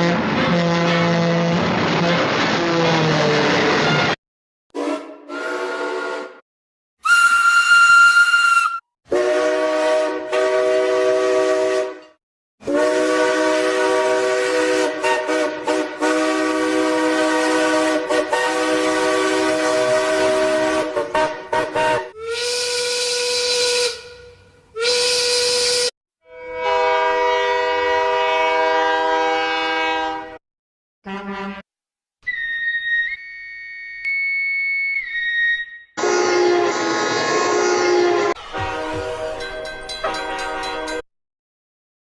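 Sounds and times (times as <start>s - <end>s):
cartoon steam train whistle: 4.7s - 6.4s, 7.0s - 30.4s, 32.3s - 39.6s.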